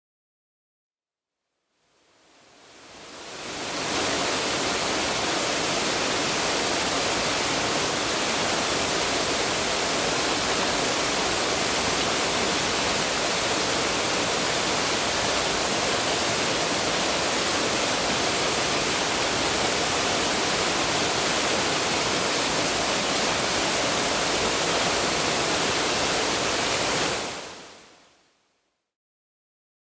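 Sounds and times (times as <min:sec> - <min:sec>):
stream water rushing over a drop: 0:02.6 - 0:27.8.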